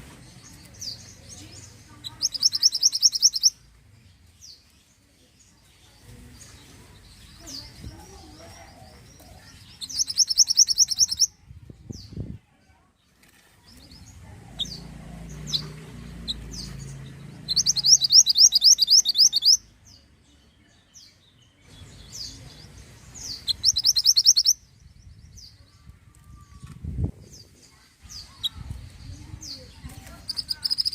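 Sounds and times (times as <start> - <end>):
bird chirps: 0.1 - 11.3, 13.7 - 25.8, 27.3 - 30.9
bird trills: 2.0 - 3.6, 9.8 - 11.3, 17.4 - 19.6, 23.2 - 24.6, 30.2 - 30.9.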